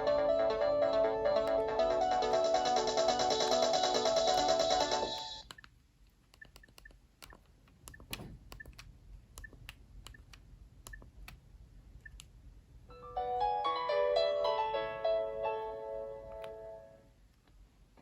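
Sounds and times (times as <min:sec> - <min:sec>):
melodic phone ringtone: 0:00.0 - 0:05.4.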